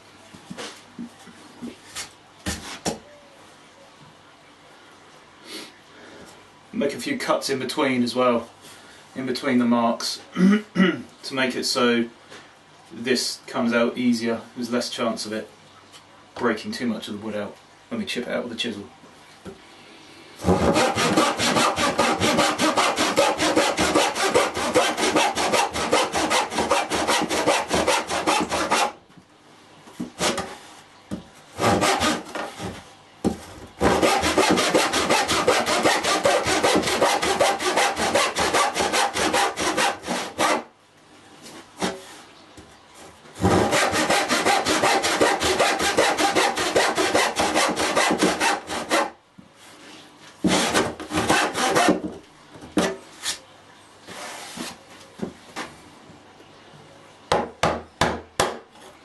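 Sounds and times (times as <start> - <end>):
handsaw cutting wood: 20.4 - 29.0, 30.2 - 30.6, 31.6 - 32.7, 33.8 - 40.7, 43.4 - 49.1, 50.4 - 52.1.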